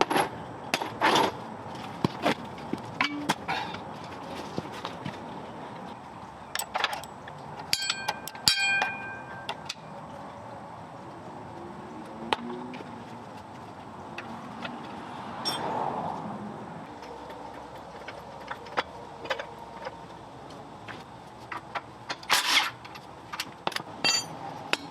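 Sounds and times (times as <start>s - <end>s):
metal tools clinking: 6.5s - 9.8s, 15.4s - 15.7s, 22.1s - 24.9s
ringing metallic strikes: 7.7s - 9.6s.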